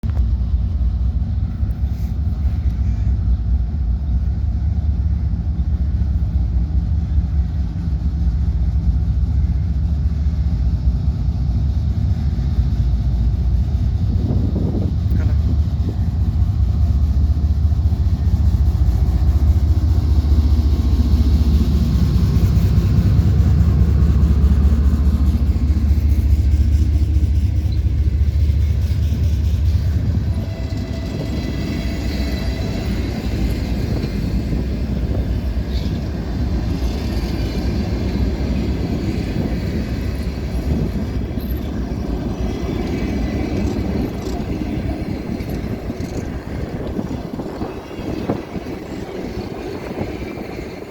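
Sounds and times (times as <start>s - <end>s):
train wheels rumbling on rails: 0.0s - 50.9s
locomotive engine drone: 0.1s - 50.9s.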